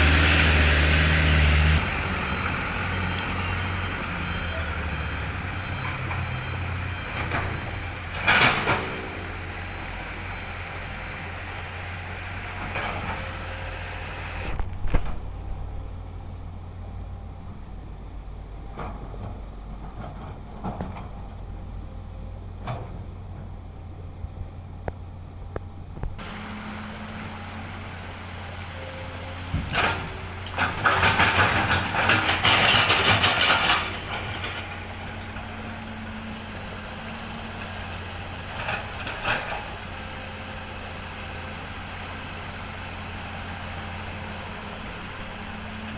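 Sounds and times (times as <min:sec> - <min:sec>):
excavator diesel engine running: 0:00.0 - 0:45.9
knocks and clanks: 0:29.5 - 0:34.8.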